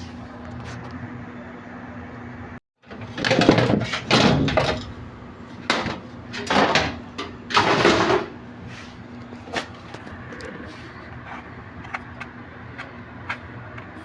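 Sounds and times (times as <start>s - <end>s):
steady low hum: 0.0s - 14.0s
scraping and knocking of machine parts: 2.8s - 14.0s.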